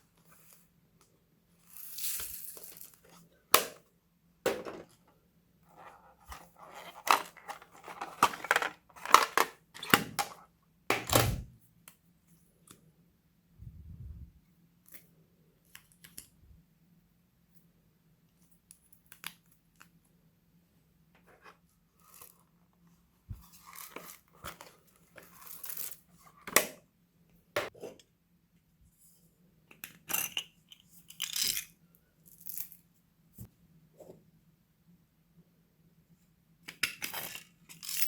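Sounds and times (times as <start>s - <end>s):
rustling and crinkling: 5.7s - 9.4s.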